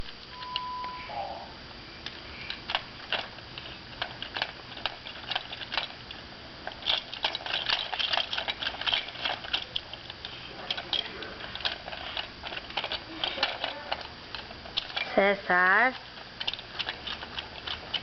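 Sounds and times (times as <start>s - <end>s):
short steady beep: 0.3s - 1.2s.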